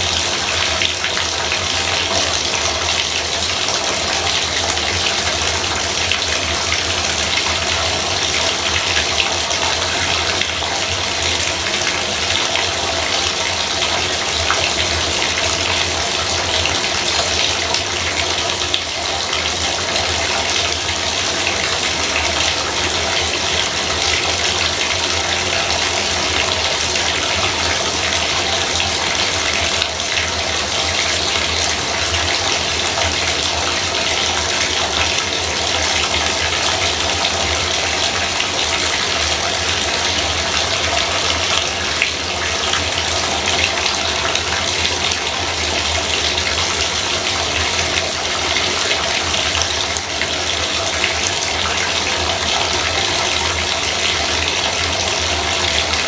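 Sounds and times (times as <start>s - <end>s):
faucet running water: 0.0s - 56.0s.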